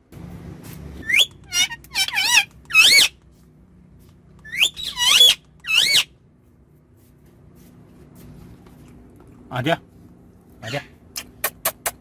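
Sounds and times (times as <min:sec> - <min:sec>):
parrot squawking: 0:01.0 - 0:03.2, 0:04.4 - 0:06.2, 0:10.6 - 0:11.4.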